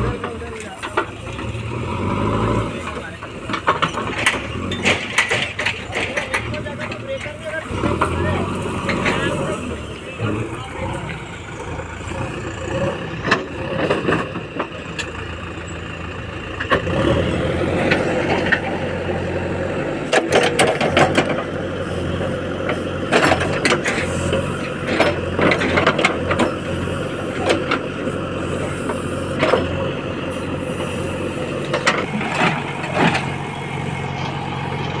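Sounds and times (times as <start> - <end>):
heavy machine diesel engine: 0.0 - 35.0
metallic knocks and clanks: 3.3 - 8.2.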